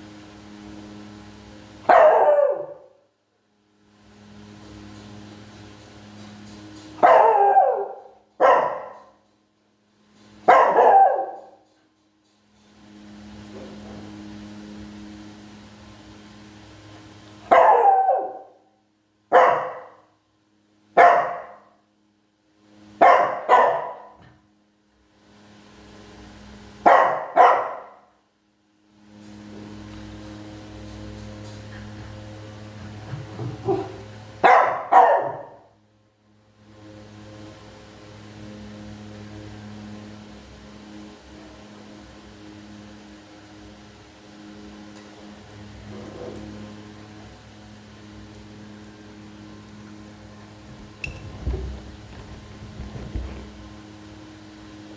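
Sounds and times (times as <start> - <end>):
small dog barking: 1.9 - 3.0, 7.0 - 9.2, 10.5 - 11.6, 17.5 - 18.6, 19.3 - 20.0, 21.0 - 21.7, 23.0 - 24.2, 26.8 - 28.0, 33.4 - 35.7
motor humming: 44.4 - 54.0.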